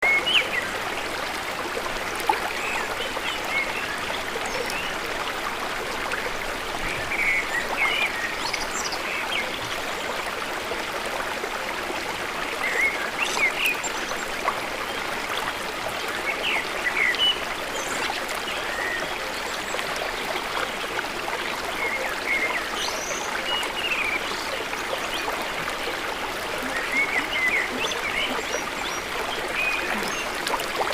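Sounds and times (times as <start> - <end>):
water trickling: 0.2 - 30.9.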